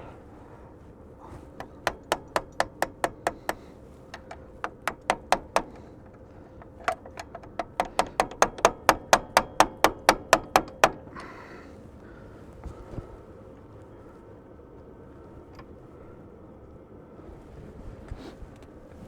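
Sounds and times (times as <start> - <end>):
hammer tapping screwdriver: 1.6 - 11.2.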